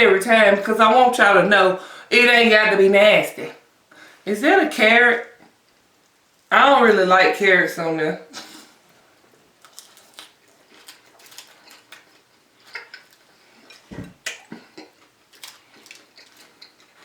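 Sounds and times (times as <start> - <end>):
chewing clicks and smacks: 9.6 - 17.0.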